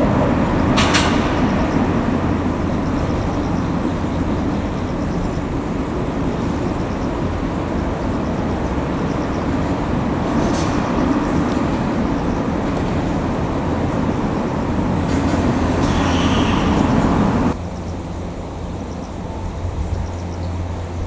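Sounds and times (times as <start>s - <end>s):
train rolling rumble: 0.0s - 21.0s
short high-pitched screech: 15.8s - 17.1s.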